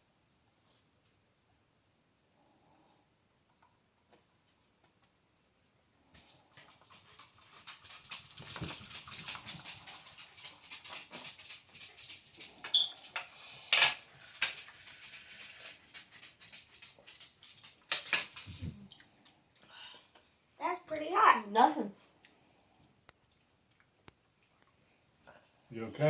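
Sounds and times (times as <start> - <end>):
cups and dishes clattering: 13.2 - 14.6.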